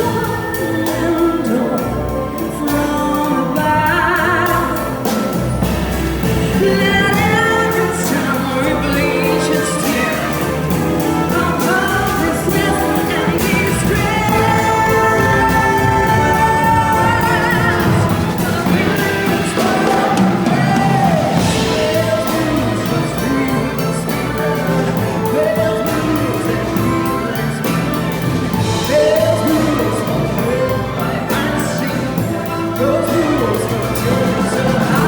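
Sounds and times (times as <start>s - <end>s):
orchestra playing slow blues: 0.0s - 35.0s.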